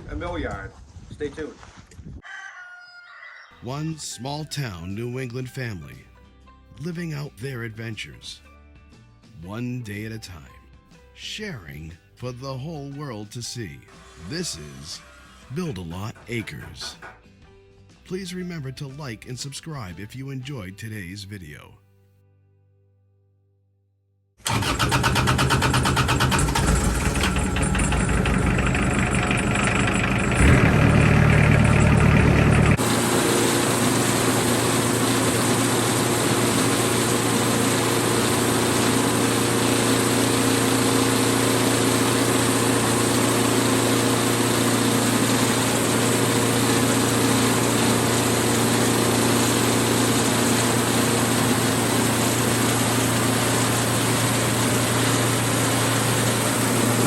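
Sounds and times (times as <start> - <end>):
engine running: 24.4 - 57.0.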